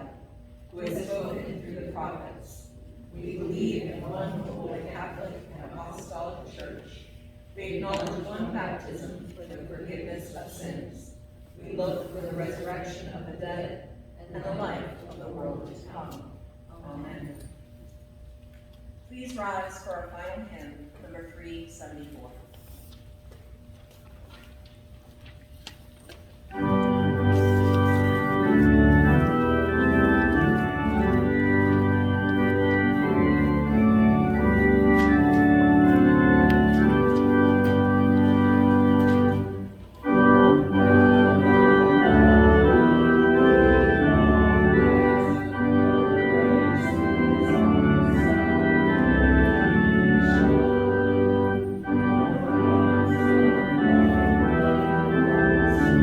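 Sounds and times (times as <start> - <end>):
church organ playing a hymn: 0.0 - 6.9, 26.5 - 56.0.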